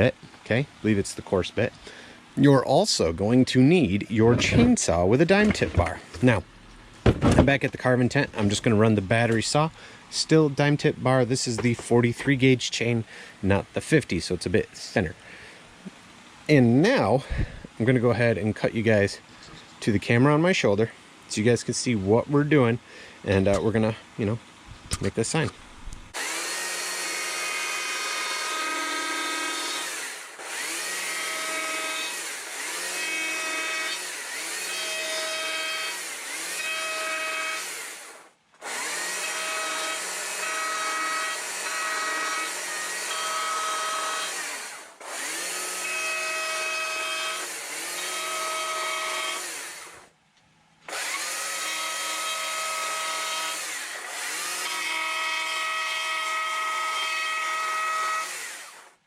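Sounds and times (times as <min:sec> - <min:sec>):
chainsaw cutting wood: 0:26.2 - 0:50.1, 0:50.9 - 0:59.0.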